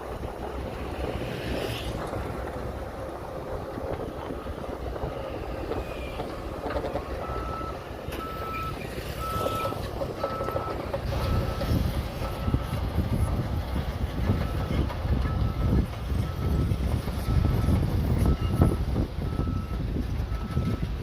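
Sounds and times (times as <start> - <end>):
bulldozer engine rumbling: 0.0 - 21.0
reversing alarm beeps: 7.2 - 13.3, 14.3 - 20.9.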